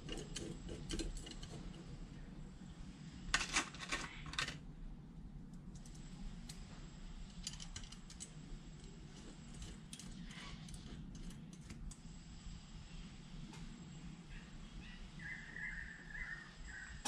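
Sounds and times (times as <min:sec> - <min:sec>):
steady low hum: 0:00.0 - 0:17.0
small metal parts clinking: 0:07.3 - 0:08.4.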